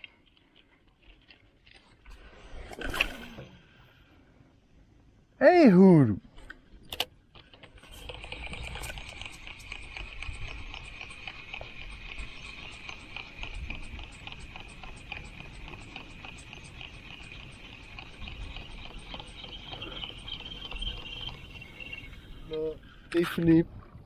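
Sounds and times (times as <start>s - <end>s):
fishing reel whirring and ticking: 7.6s - 23.4s.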